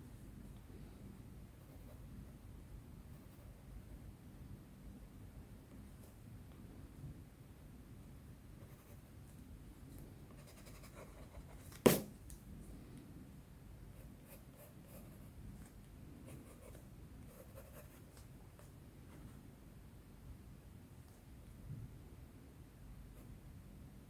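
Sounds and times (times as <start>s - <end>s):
colored pencil scratching on paper: 8.6s - 9.2s, 10.4s - 12.0s, 14.0s - 15.4s, 16.2s - 19.4s
sharp knock: 11.8s - 12.1s.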